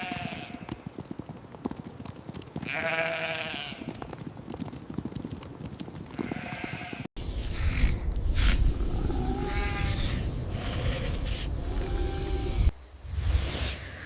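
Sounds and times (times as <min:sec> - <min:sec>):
sheep bleating: 0:00.0 - 0:00.6, 0:02.6 - 0:03.9, 0:06.1 - 0:07.1.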